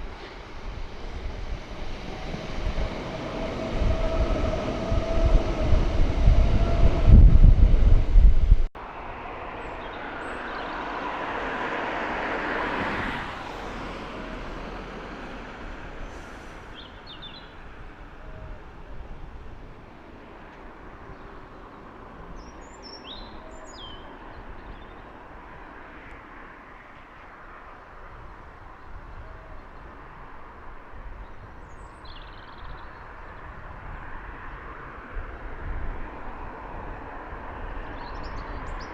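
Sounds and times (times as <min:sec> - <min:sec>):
small birds chirping: 0:16.7 - 0:17.6, 0:20.9 - 0:25.2.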